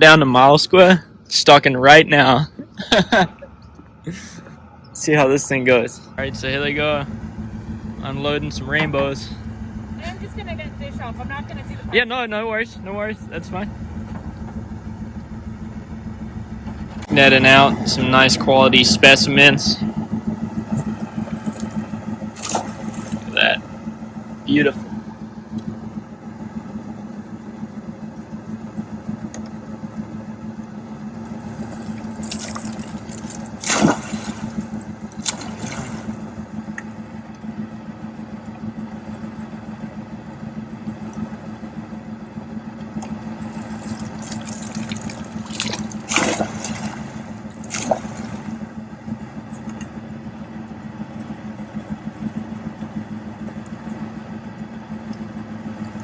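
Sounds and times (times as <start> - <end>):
truck engine humming: 0.0 - 56.0
water splashes: 20.5 - 23.6, 31.3 - 36.4, 43.0 - 48.7.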